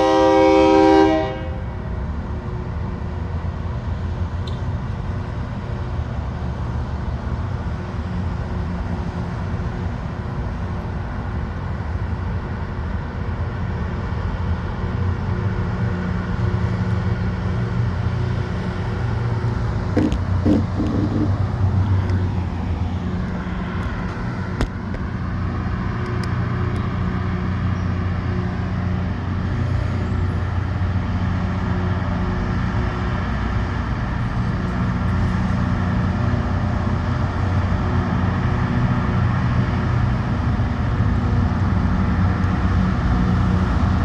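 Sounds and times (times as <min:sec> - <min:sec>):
train horn chord: 0:00.0 - 0:01.8
train rumbling along track: 0:00.0 - 0:44.0.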